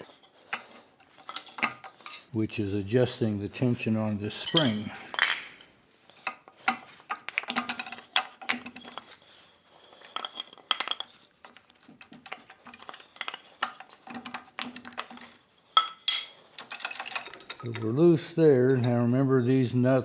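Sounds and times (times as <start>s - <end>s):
wrench clinking on metal: 4.3s - 5.7s, 15.8s - 18.0s.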